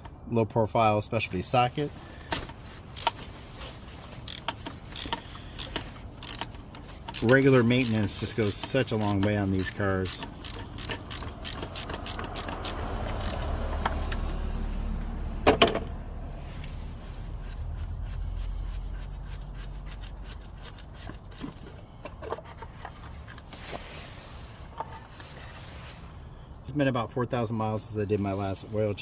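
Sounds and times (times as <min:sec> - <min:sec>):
scraping and handling noises: 0:01.5 - 0:12.6, 0:16.4 - 0:26.2
ratchet clicking: 0:02.9 - 0:03.2, 0:04.2 - 0:13.5.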